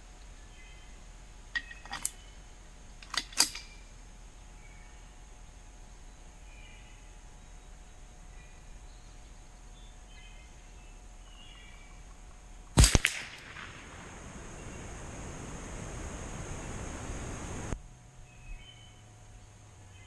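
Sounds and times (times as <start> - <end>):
rifle shot cracks: 12.8 - 15.5.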